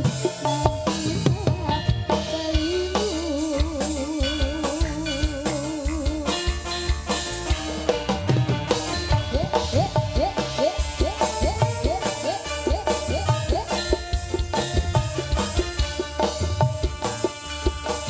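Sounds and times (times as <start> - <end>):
drums playing busy rhythm: 0.0 - 18.0
wavering melody line: 0.3 - 18.0.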